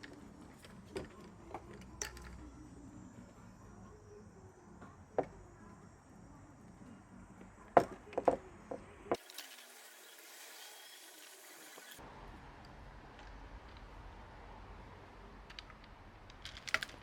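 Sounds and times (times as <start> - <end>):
clicks of small parts handled: 0.0 - 2.4, 15.5 - 17.0.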